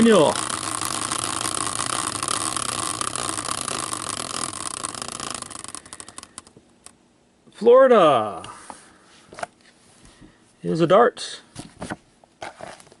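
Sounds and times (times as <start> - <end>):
prize wheel ticking: 0.0 - 6.5.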